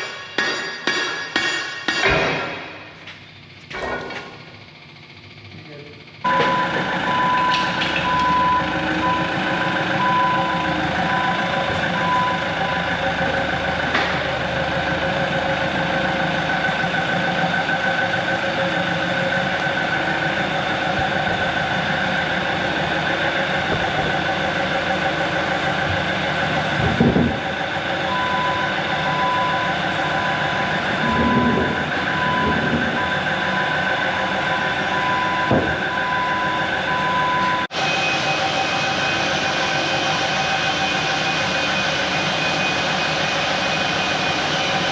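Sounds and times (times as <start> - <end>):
heavy diesel equipment running: 0.0 - 44.9
backup alarm beeping: 6.2 - 13.2, 28.0 - 40.0.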